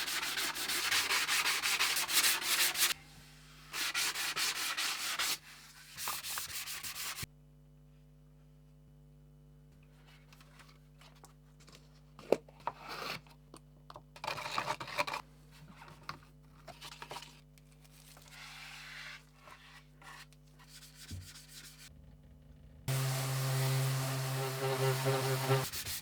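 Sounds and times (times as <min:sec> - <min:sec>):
electric power tool running: 0:22.9 - 0:25.7
hand scraping wood: 0:22.9 - 0:26.0.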